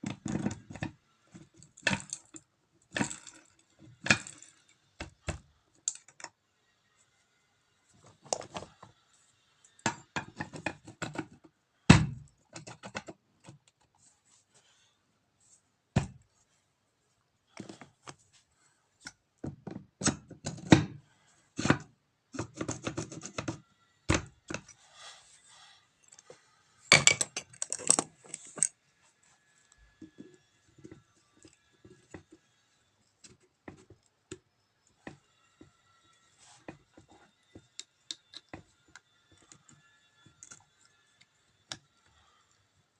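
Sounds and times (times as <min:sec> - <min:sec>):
metal tools knocking and clinking: 0:26.9 - 0:28.7.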